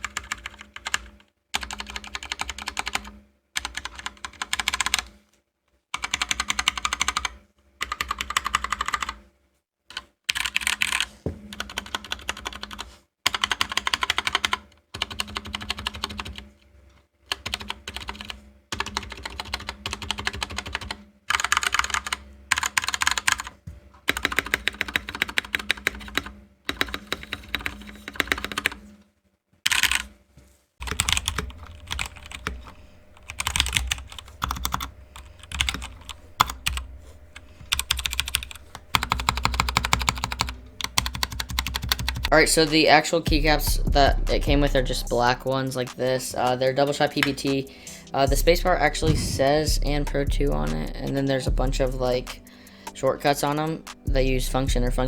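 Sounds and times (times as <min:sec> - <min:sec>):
mechanical keyboard key clacks: 0:30.8 - 0:42.3.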